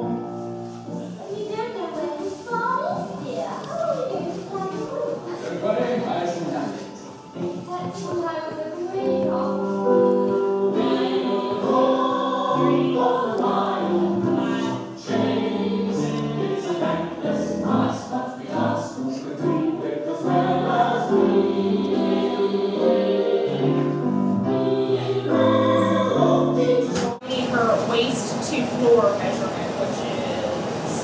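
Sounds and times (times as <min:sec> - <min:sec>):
group of voices singing: 0:08.8 - 0:31.0.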